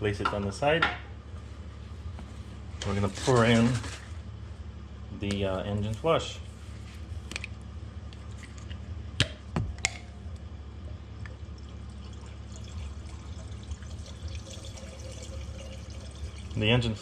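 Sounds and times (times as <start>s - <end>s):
liquid trickling into engine: 11.2s - 17.0s.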